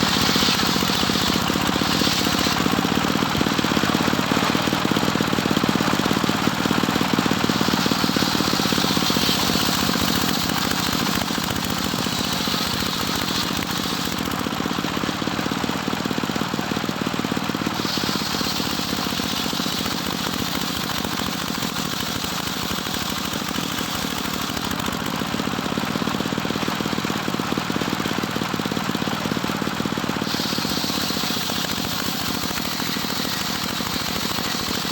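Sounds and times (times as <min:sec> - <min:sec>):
high saw hiss: 0:00.0 - 0:03.1, 0:05.7 - 0:14.2, 0:17.7 - 0:24.2, 0:30.2 - 0:34.9
circular sawmill sawing log: 0:00.0 - 0:34.9.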